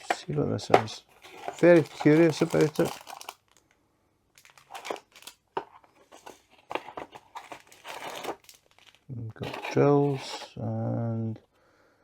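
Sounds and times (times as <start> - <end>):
packaging crinkling: 1.1 - 10.4.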